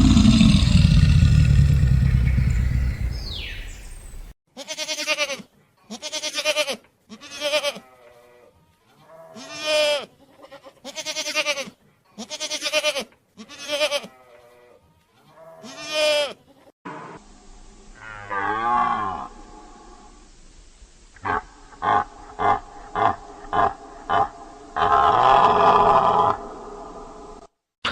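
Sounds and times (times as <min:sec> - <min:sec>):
animal loud drawn-out call: 0:00.0 - 0:04.2, 0:21.2 - 0:27.3
goat bleating: 0:04.6 - 0:08.4, 0:09.0 - 0:16.7.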